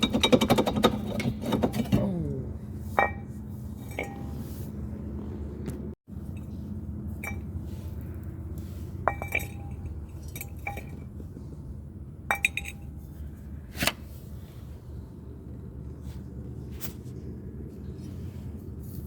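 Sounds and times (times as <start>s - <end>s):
steady low hum: 0.0s - 19.0s
metal tools clinking: 2.9s - 4.4s, 9.0s - 11.1s, 12.3s - 12.9s.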